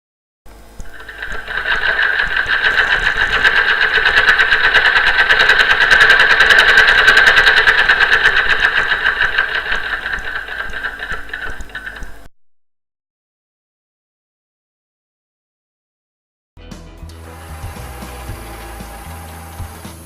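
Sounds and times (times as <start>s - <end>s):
sewing machine needle rattle: 0.8s - 12.3s.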